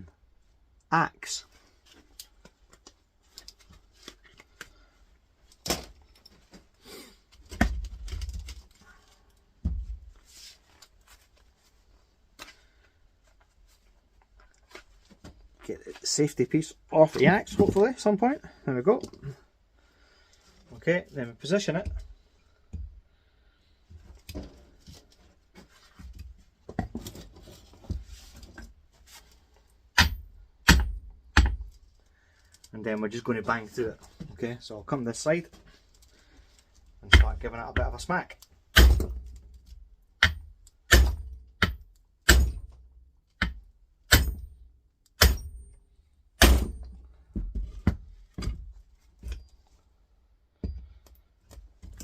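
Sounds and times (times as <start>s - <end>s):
tool handling clicks and rustles: 1.6s - 4.8s, 5.4s - 11.7s.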